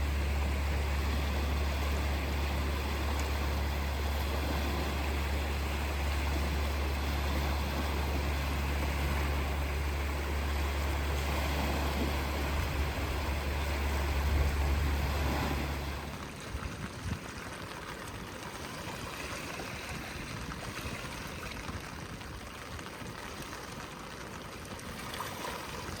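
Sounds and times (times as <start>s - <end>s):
low rumble: 0.0s - 17.3s
stream rushing and gurgling: 0.0s - 26.0s.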